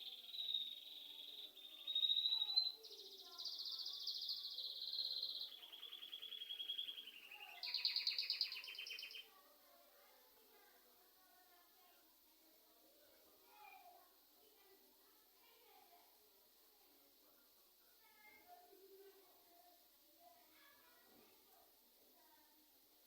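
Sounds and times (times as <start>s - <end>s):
songbird trilling: 0.0s - 9.2s.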